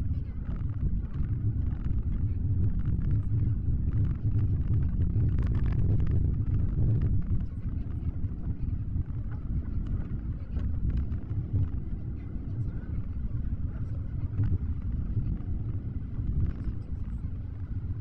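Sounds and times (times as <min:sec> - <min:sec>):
car road and engine rumble: 0:00.0 - 0:18.0.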